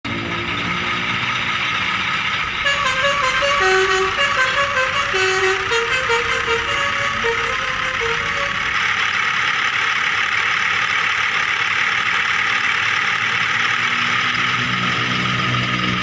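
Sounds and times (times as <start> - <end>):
simple electronic tune: 2.6 - 8.8.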